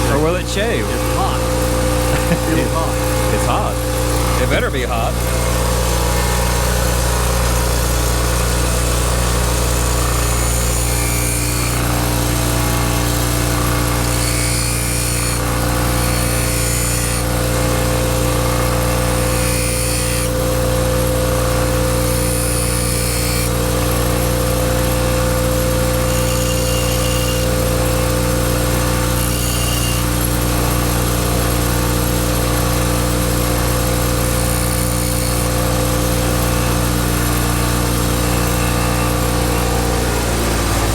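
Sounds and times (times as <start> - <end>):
grinding wheel motor humming: 0.0 - 40.9
chisel grinding hiss: 9.4 - 12.0, 13.1 - 20.9, 21.8 - 24.3, 25.5 - 30.8, 32.3 - 36.5.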